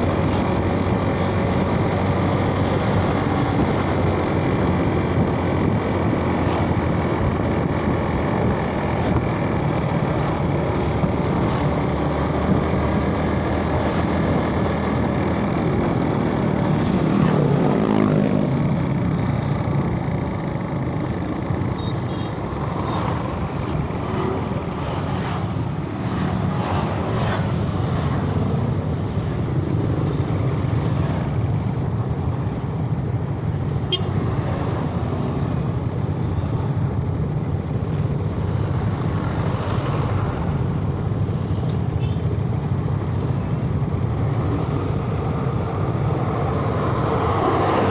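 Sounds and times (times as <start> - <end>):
road traffic: 0.0 - 47.9
wind: 0.0 - 47.9.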